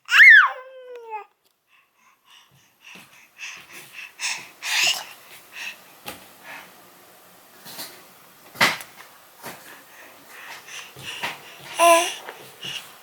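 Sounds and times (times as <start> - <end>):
baby huffing breaths: 2.0 - 5.8, 9.9 - 13.0.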